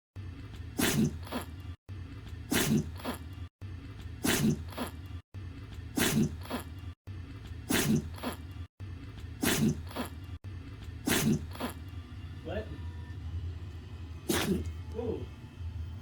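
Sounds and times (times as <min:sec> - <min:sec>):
puppy sneezing: 0:00.8 - 0:01.5, 0:02.5 - 0:03.2, 0:04.2 - 0:04.9, 0:06.0 - 0:06.6, 0:07.7 - 0:08.4, 0:09.4 - 0:10.1, 0:11.0 - 0:11.8, 0:14.3 - 0:14.7.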